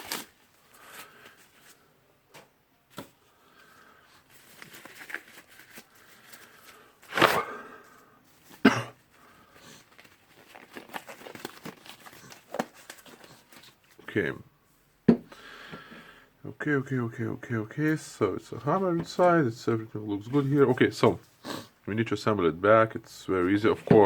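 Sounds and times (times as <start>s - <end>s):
gloves rustling and crinkling: 0.0s - 2.0s, 2.9s - 14.2s.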